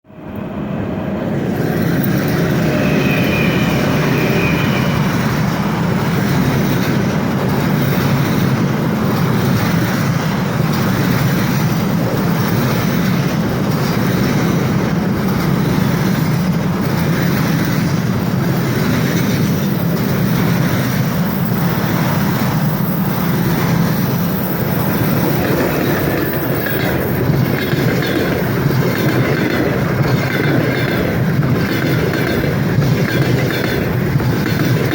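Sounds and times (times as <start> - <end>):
train wheels rumbling on rails: 0.1 - 34.9
clickety-clack over rail joints: 1.4 - 34.9
faint high whine: 2.0 - 5.9.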